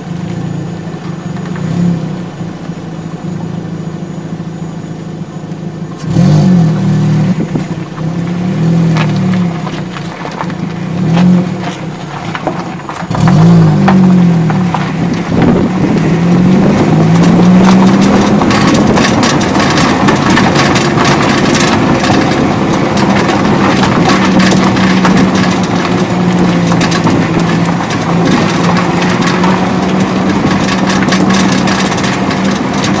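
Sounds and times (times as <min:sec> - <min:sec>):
car engine running: 0:00.0 - 0:33.0
metallic knocking rattle: 0:16.5 - 0:33.0.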